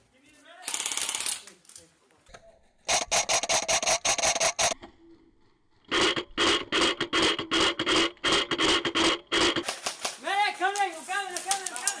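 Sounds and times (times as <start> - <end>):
airsoft rifles firing rapid shots: 2.9 - 4.8.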